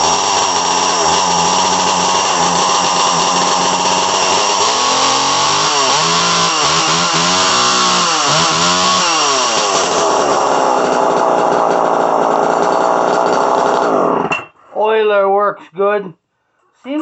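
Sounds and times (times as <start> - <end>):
chainsaw running: 0.0 - 14.4.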